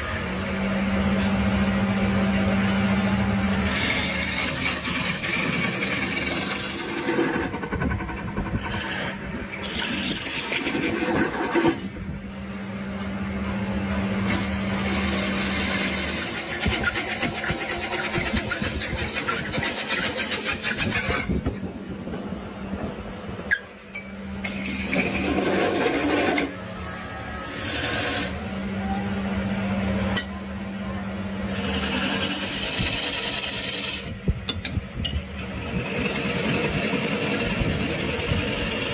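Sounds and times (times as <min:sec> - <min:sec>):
power tool motor hum: 0:03.4 - 0:11.8, 0:24.4 - 0:28.4
rasping on wood: 0:03.6 - 0:11.8, 0:14.3 - 0:21.3.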